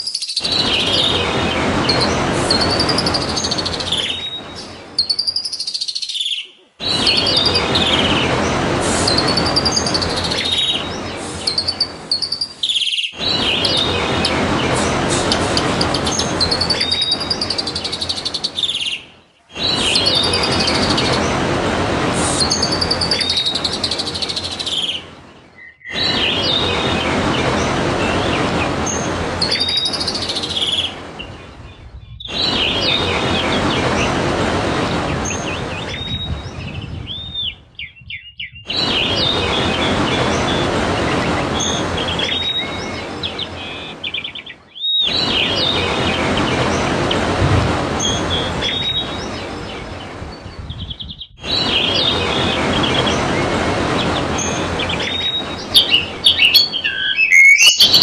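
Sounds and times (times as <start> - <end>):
bird whistling song: 0.0 - 8.2, 9.0 - 14.4, 15.8 - 21.2, 22.4 - 27.0, 28.8 - 31.0, 35.8 - 39.9, 41.6 - 46.2, 48.0 - 53.1, 54.4 - 58.0.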